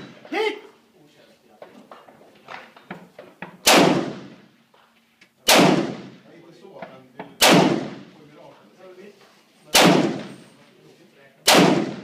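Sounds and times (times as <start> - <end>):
rifle shots echoing: 3.6 - 4.5, 5.4 - 6.4, 7.4 - 8.2, 9.7 - 10.5, 11.4 - 12.0.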